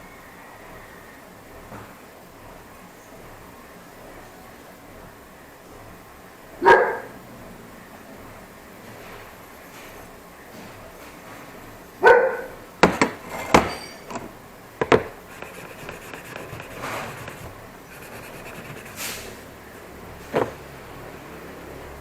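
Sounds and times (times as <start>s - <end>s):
dog barking: 6.6s - 7.2s, 12.0s - 12.6s
sharp knocks: 12.8s - 13.7s, 14.8s - 17.6s, 20.2s - 20.7s.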